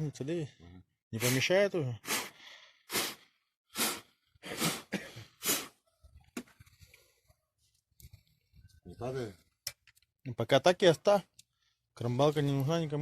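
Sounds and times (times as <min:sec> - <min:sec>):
man coughing: 0:04.4 - 0:05.4.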